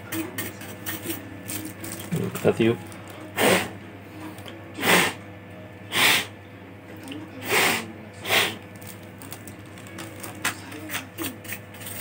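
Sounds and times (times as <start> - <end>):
hissing puffs of air: 5.9 - 6.3.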